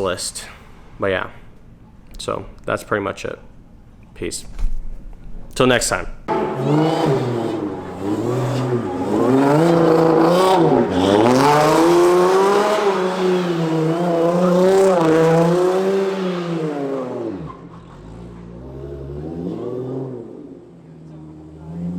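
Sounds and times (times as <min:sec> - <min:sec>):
car engine accelerating hard: 0:06.3 - 0:21.9.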